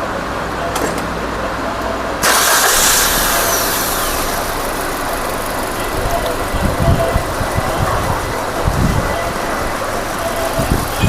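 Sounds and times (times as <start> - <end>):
car engine idling: 2.2 - 11.0
loud steady hiss: 2.2 - 11.0.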